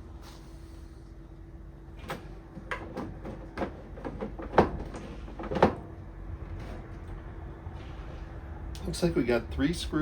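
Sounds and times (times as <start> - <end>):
knocks and clunks of handling case: 2.1 - 5.9.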